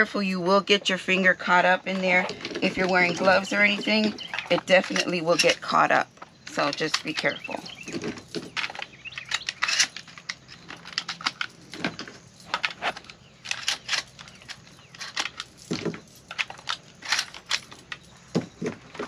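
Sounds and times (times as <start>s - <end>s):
shotgun shells clicking into magazine: 6.7s - 18.3s.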